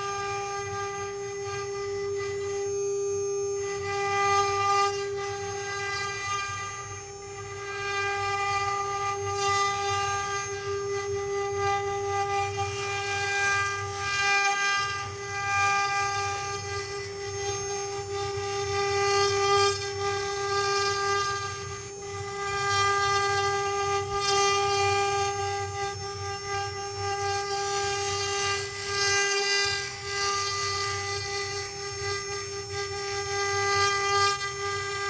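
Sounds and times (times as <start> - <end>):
machine spindle motors whining: 0.0 - 35.0.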